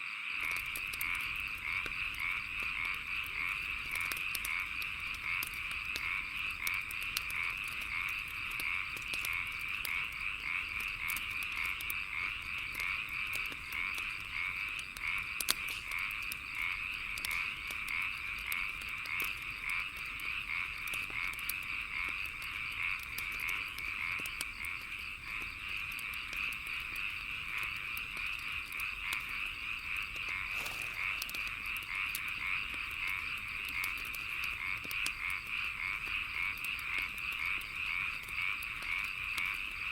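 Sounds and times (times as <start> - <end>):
chorus of frogs calling: 0.0 - 39.9
wood fire crackling: 0.4 - 39.9.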